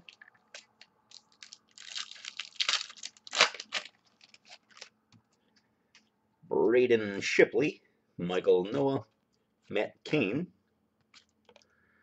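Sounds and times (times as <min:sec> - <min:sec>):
foil wrapper crinkling and tearing: 0:00.1 - 0:04.9.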